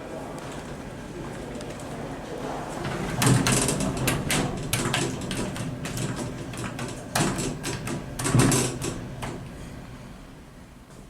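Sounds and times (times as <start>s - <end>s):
lift door knocks: 2.9s - 9.5s
lift door mechanism clicking: 2.9s - 9.6s.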